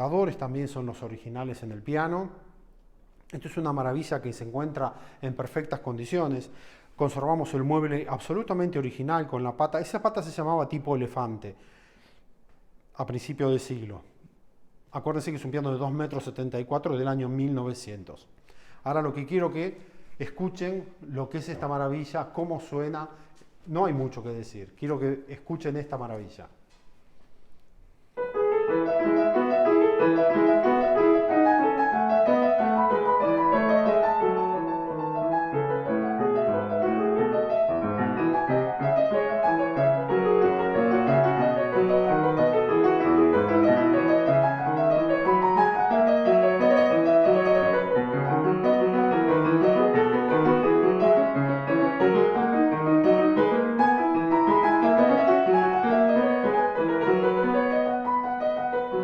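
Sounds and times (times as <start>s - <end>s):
grand piano playing: 28.2s - 59.0s.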